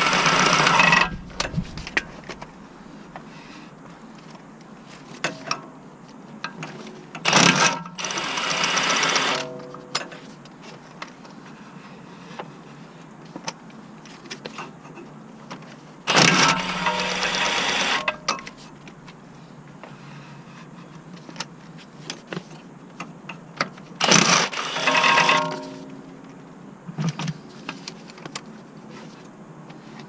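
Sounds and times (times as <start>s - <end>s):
cordless power tool buzzing: 0.0s - 1.5s, 7.3s - 9.5s, 16.1s - 18.2s, 24.0s - 25.6s
tools clicking and knocking: 16.1s - 18.6s.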